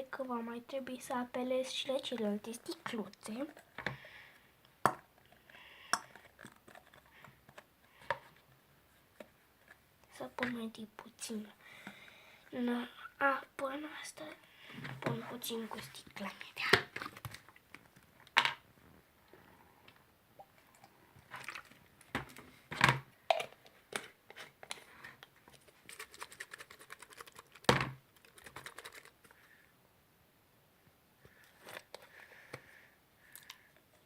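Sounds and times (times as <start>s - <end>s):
plastic bottles clicking and tapping: 4.8s - 8.4s, 21.4s - 24.8s.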